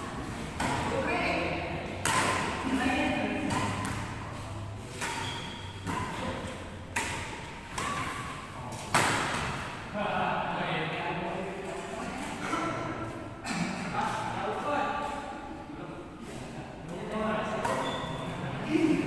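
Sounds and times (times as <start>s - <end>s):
racket striking shuttlecock: 0.5s - 1.1s, 1.8s - 9.8s.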